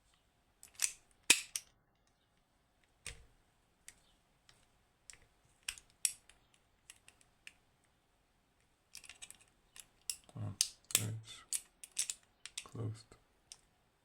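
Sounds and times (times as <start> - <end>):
small metal parts clicking: 0.6 - 1.7, 8.9 - 12.8.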